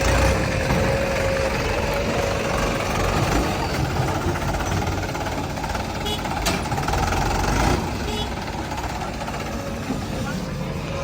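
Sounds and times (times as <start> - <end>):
backhoe loader diesel engine: 0.0 - 11.0
tractor diesel engine: 0.0 - 11.0.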